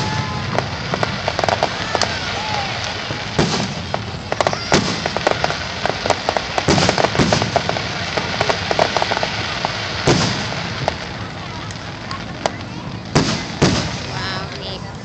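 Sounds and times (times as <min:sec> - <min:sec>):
fireworks bursting and crackling: 0:00.0 - 0:15.0.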